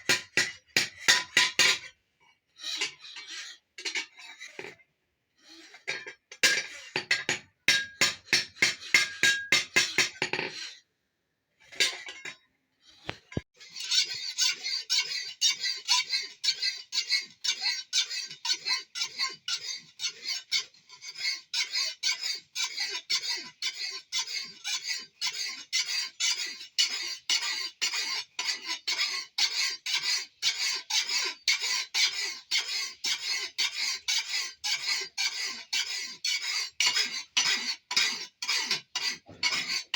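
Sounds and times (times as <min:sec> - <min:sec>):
metal scraping on metal: 0:00.0 - 0:02.0, 0:02.6 - 0:10.9, 0:11.6 - 0:39.9
hammer striking metal on anvil: 0:06.4 - 0:10.2.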